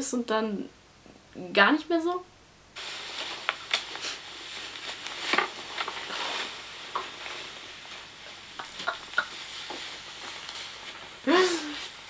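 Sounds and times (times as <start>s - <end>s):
steady hiss: 0.8s - 12.0s
rustling in bed: 2.8s - 12.0s.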